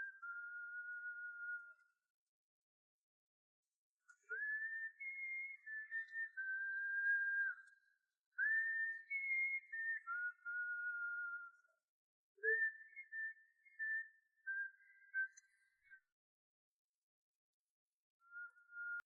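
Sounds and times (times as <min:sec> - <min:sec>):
person whistling a tune: 0:00.0 - 0:02.0, 0:04.2 - 0:07.8, 0:08.4 - 0:11.7, 0:12.4 - 0:16.1, 0:18.2 - 0:19.0.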